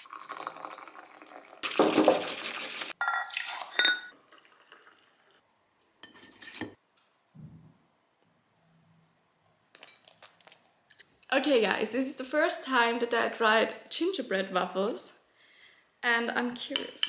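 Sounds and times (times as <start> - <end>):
utensil clinking against dishware: 3.0 - 4.1.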